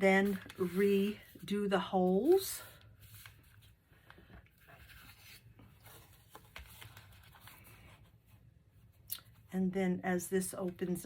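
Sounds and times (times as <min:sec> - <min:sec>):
paper rustling and tapping: 0:05.8 - 0:07.6.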